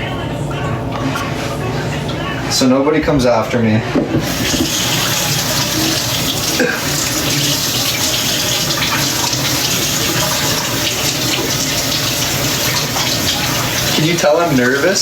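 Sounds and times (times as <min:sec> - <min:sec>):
tap running into sink: 0:04.0 - 0:14.9
hands washing: 0:04.2 - 0:15.0.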